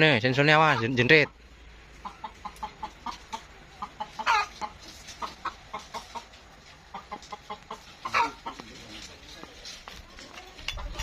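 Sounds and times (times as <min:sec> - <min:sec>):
chicken clucking: 0:00.0 - 0:11.0
chicken squawk: 0:02.0 - 0:06.3, 0:06.9 - 0:08.6.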